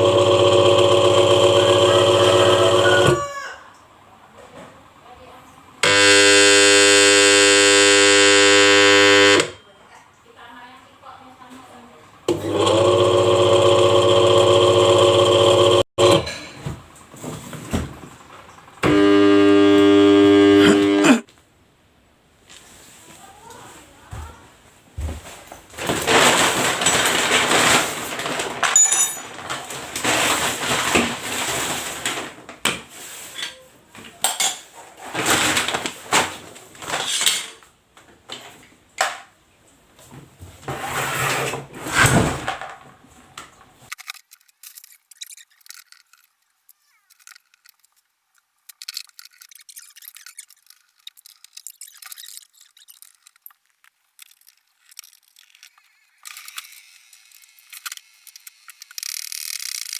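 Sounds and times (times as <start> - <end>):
tools and metal parts clinking: 26.1 - 27.8, 28.6 - 29.7, 48.7 - 59.9.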